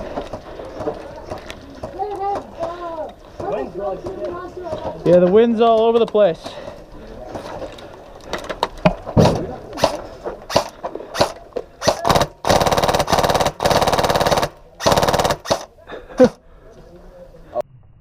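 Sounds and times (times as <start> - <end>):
airsoft gun firing: 9.2 - 15.7.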